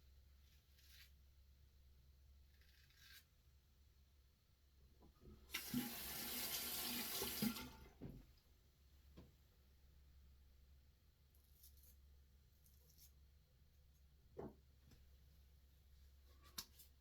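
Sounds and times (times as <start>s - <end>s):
sink tap running: 5.5s - 7.9s.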